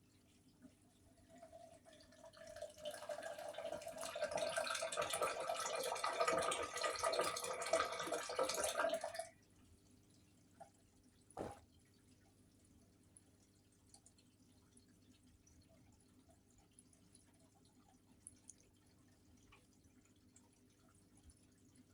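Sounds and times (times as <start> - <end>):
washing machine filling with water: 0.7 - 9.3, 11.4 - 11.6
short knock: 11.4 - 11.6.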